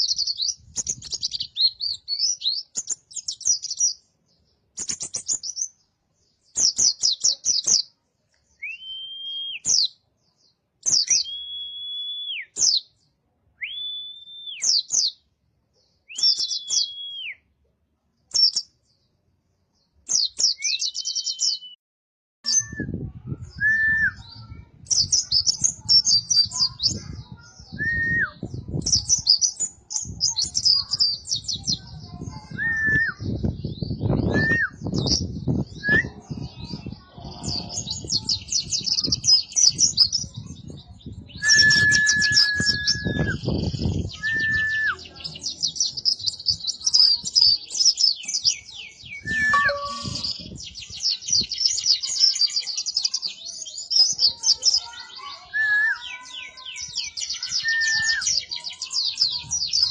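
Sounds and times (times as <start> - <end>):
clear whistled bird notes: 8.6 - 9.9, 10.9 - 12.8, 16.0 - 17.4, 20.1 - 21.8, 41.3 - 45.3, 48.0 - 52.1, 55.4 - 59.2
bird twittering: 41.5 - 52.1.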